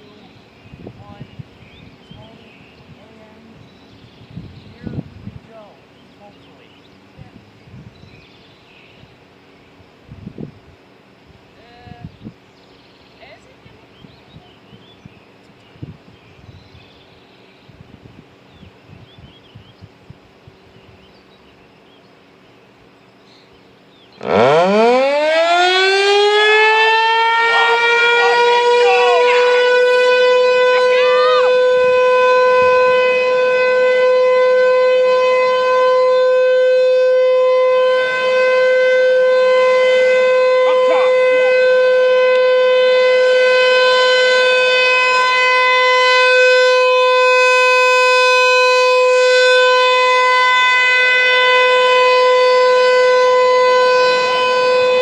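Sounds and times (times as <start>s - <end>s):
warning siren winding up: 24.2s - 55.0s.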